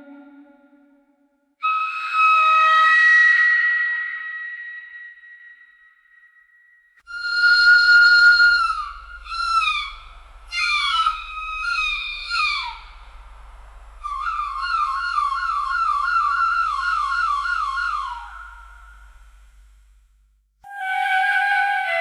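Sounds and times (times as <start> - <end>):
low electronic hum: 7.0 - 20.6
warbling trilling tone: 7.1 - 19.0.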